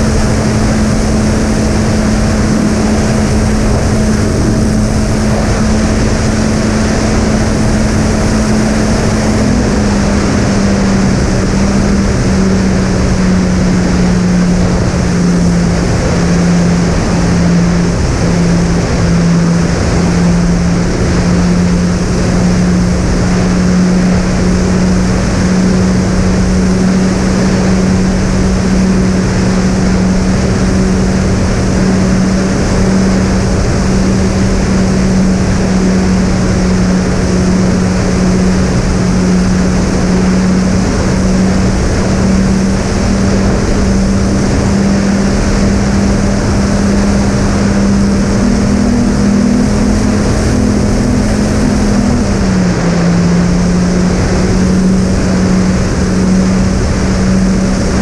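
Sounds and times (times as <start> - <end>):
electric plane motors droning: 0.0 - 58.0
wind noise: 0.0 - 58.0.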